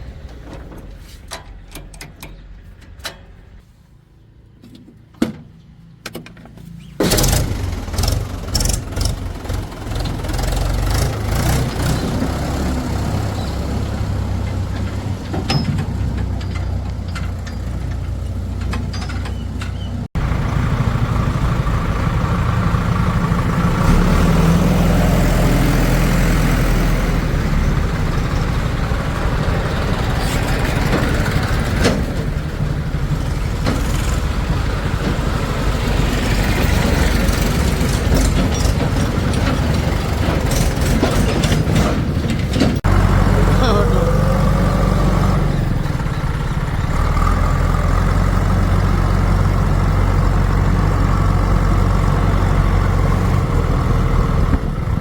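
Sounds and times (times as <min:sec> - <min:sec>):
heavy diesel engine running: 0:07.0 - 0:55.0
scattered clicks and knocks: 0:36.8 - 0:42.9.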